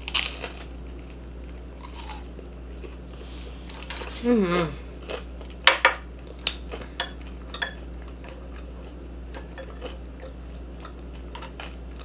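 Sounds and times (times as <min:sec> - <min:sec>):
chewing and mouth sounds: 0:00.0 - 0:03.0, 0:06.2 - 0:12.0
steady low hum: 0:00.0 - 0:12.0.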